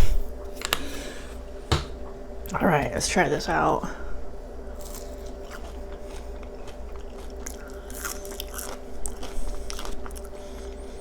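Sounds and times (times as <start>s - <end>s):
crunchy biting and chewing: 4.7s - 11.0s.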